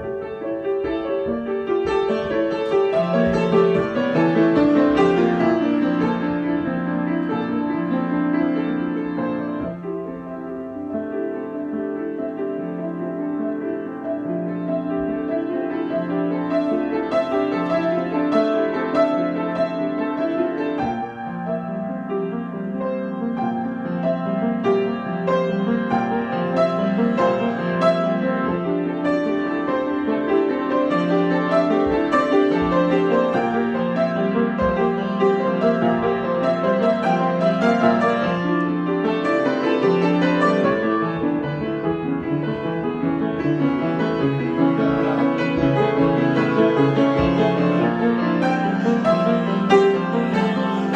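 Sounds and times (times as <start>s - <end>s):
solo piano: 0.0s - 50.9s.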